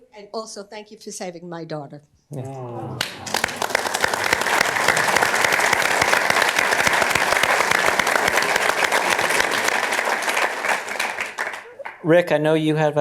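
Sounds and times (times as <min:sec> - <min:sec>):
audience applauding: 0:03.0 - 0:12.2.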